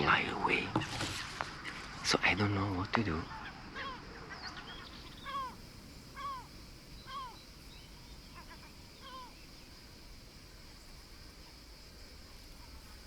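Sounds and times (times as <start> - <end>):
bird honking calls: 0.0 - 9.5
steady high-pitched hiss: 0.0 - 13.0.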